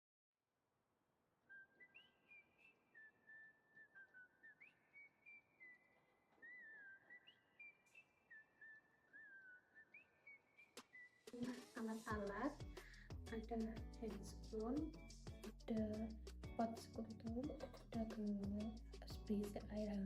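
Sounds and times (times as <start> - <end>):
faint whistled tune: 1.4 - 12.6.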